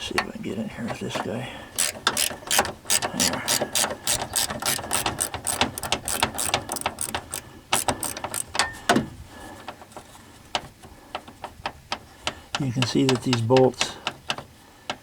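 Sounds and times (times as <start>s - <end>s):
ratcheting wrench clicking: 1.8s - 8.6s.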